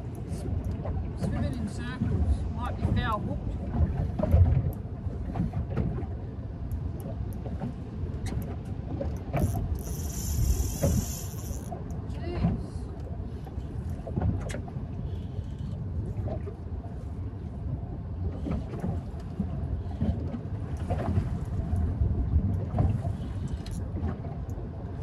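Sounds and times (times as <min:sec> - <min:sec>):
low rumbling on boat: 0:00.0 - 0:25.0
knocks and clicks of reel: 0:09.3 - 0:11.7.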